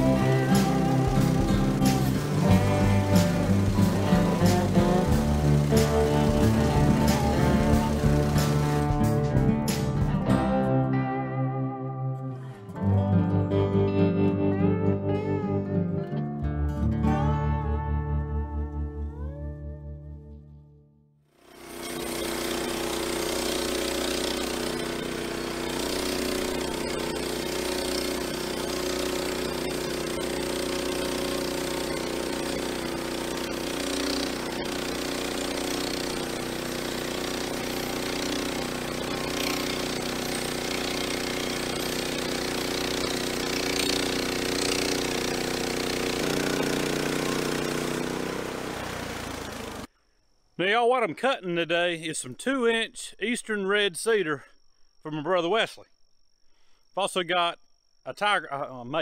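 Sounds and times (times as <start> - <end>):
sawmill engine running: 0.0 - 10.2, 21.4 - 49.9
saw blade cutting log: 21.6 - 49.9.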